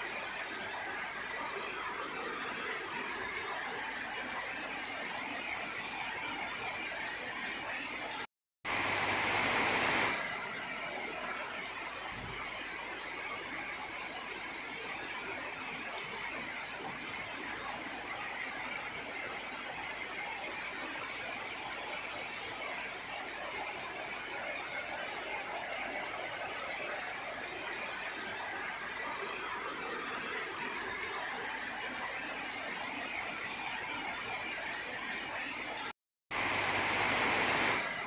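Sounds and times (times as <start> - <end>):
steady rain hiss: 8.7 - 13.0, 36.3 - 38.0.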